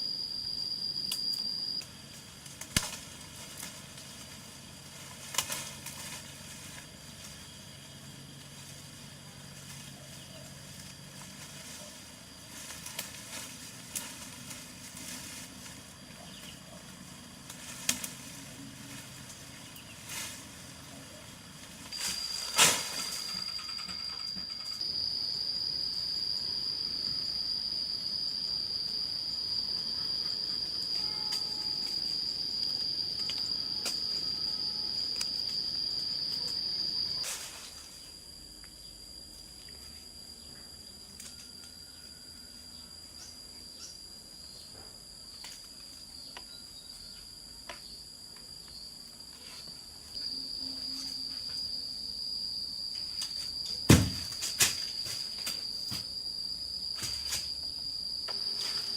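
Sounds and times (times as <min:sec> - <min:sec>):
insects chirring: 0:00.0 - 0:58.9.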